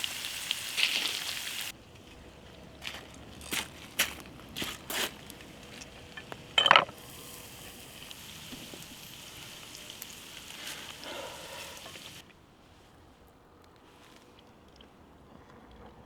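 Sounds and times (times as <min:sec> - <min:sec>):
steak sizzling over embers: 0:00.0 - 0:12.2.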